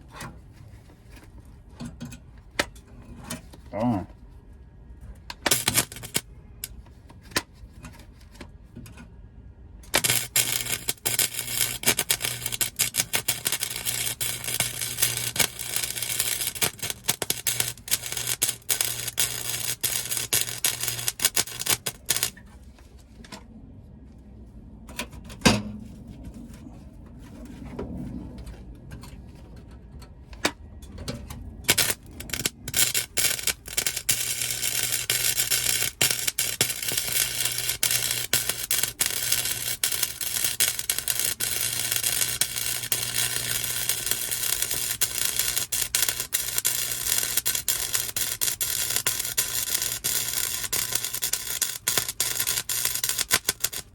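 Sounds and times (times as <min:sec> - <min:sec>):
welding arc crackling: 0:05.4 - 0:06.3, 0:09.8 - 0:22.4, 0:31.7 - 0:53.9.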